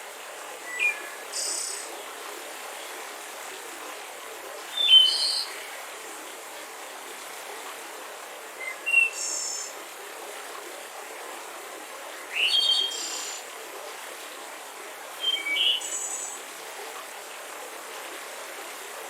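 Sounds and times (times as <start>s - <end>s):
woodland ambience hiss: 0.0s - 19.0s
forest birds chirping and whistling: 0.7s - 1.7s, 4.7s - 5.5s, 15.2s - 16.4s.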